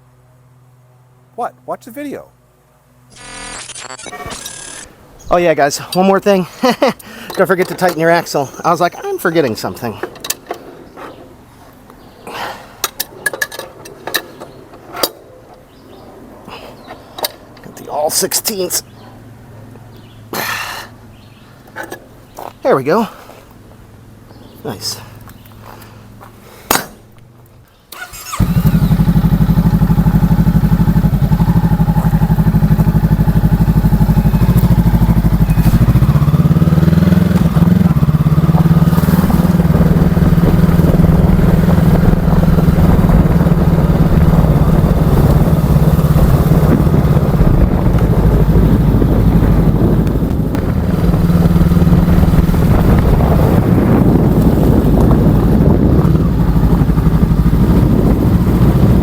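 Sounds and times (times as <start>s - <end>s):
motorcycle engine running: 28.2s - 59.0s.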